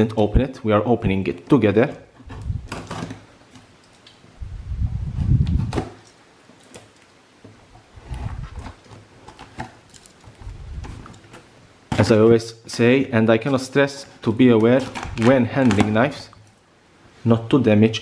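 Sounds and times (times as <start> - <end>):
cardboard box scraping: 8.0 - 9.8.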